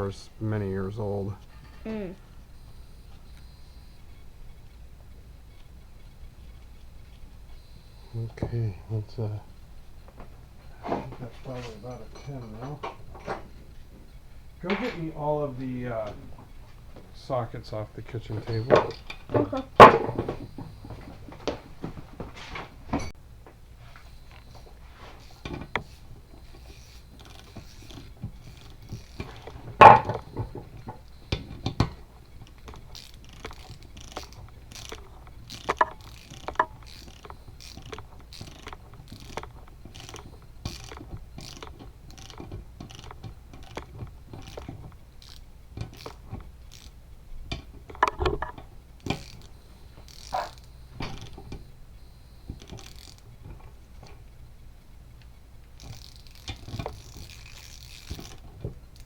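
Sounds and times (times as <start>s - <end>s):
metal tools clanking: 0.0s - 1.9s, 10.2s - 21.8s, 22.4s - 23.2s, 23.9s - 51.7s
ratchet wrench clicking: 25.2s - 51.6s, 52.6s - 53.3s, 55.7s - 59.0s.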